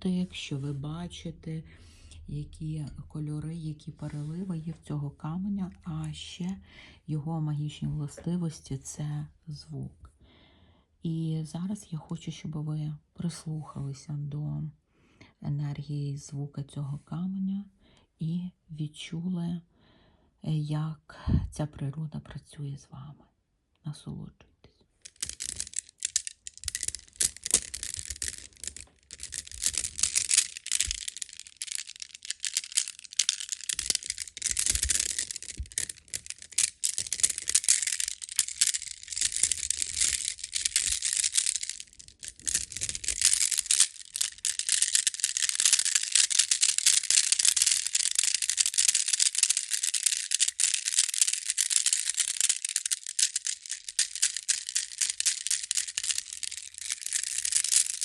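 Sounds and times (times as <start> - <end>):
stones rattling together: 25.1 - 58.0.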